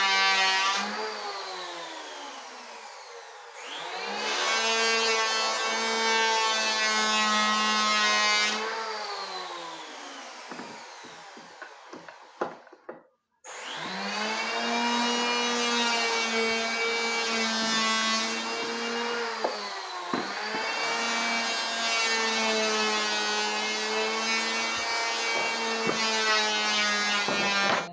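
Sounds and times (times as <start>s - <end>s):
table saw motor whine: 0.0s - 12.5s, 13.5s - 27.9s
saw winding down with knocks: 8.7s - 12.9s, 23.6s - 27.9s.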